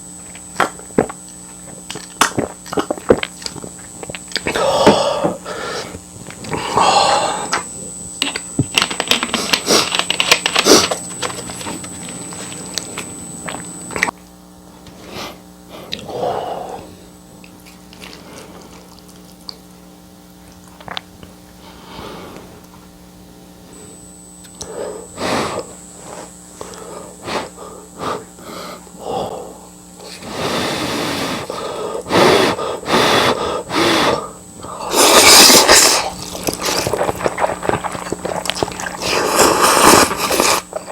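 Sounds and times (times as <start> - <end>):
person chewing and smacking: 0.2 - 6.8, 7.4 - 14.2, 15.9 - 16.1, 17.3 - 19.8, 20.4 - 21.4, 34.8 - 40.9
breathing: 4.6 - 7.6, 21.6 - 22.6, 24.6 - 34.9
slurping: 30.0 - 40.9.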